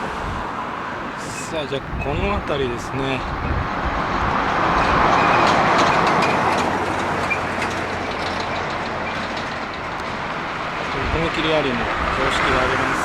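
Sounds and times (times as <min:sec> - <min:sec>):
vehicle passing by: 0:00.0 - 0:13.0.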